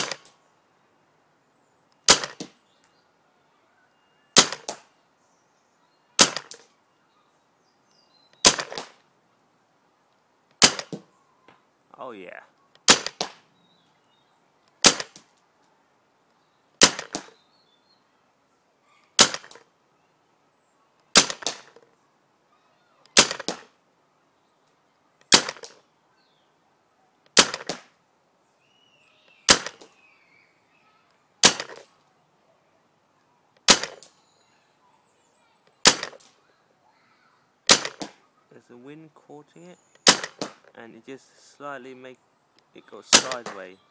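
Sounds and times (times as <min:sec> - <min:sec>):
paintball marker shot pops: 0:00.0 - 0:00.4, 0:02.0 - 0:02.6, 0:04.4 - 0:04.9, 0:06.2 - 0:06.7, 0:08.4 - 0:09.0, 0:10.6 - 0:11.6, 0:12.8 - 0:13.4, 0:14.8 - 0:15.3, 0:16.8 - 0:17.4, 0:19.2 - 0:19.7, 0:21.1 - 0:21.9, 0:23.0 - 0:23.7, 0:25.3 - 0:25.8, 0:27.3 - 0:28.0, 0:29.5 - 0:30.0, 0:31.4 - 0:31.9, 0:33.6 - 0:34.1, 0:35.8 - 0:36.3, 0:37.7 - 0:38.2, 0:40.0 - 0:40.7, 0:43.1 - 0:43.8
quieter crack: 0:08.4 - 0:09.0, 0:12.8 - 0:13.5, 0:16.8 - 0:17.4, 0:37.7 - 0:38.2, 0:40.0 - 0:40.8, 0:43.1 - 0:43.7.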